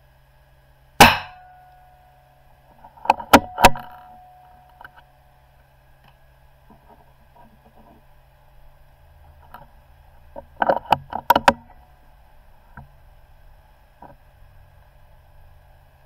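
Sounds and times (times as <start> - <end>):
rifle shot: 1.0 - 1.6.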